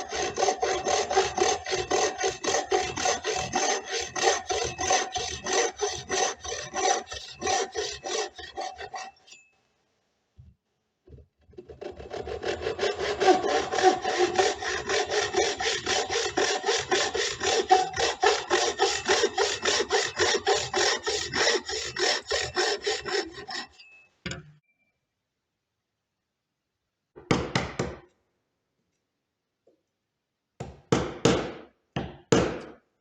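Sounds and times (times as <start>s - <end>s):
hand tool cutting wood: 0.0s - 9.3s, 11.5s - 23.8s.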